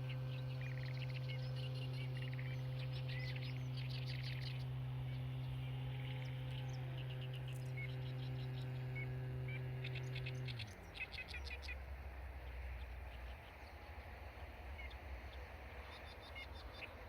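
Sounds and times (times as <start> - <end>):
low machine hum: 0.0 - 17.0
small birds chirping: 0.0 - 17.0.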